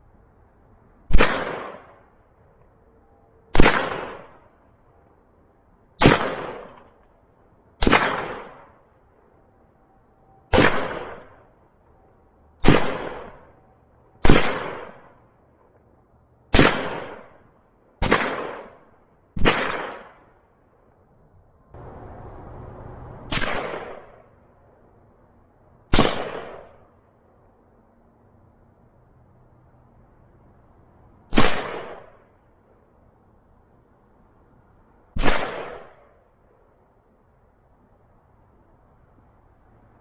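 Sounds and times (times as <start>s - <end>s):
single gunshots: 1.1s - 2.0s, 3.6s - 4.4s, 6.0s - 6.9s, 7.8s - 8.7s, 10.5s - 11.4s, 12.6s - 13.4s, 14.2s - 15.1s, 16.5s - 17.3s, 18.0s - 18.8s, 19.4s - 20.2s, 23.3s - 24.2s, 25.9s - 26.8s, 31.3s - 32.2s, 35.2s - 36.0s.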